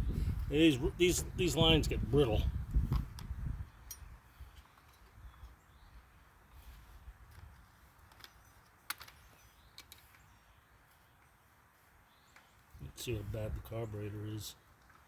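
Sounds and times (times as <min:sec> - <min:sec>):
faint clicks of small parts: 0:07.3 - 0:11.4, 0:14.7 - 0:15.0.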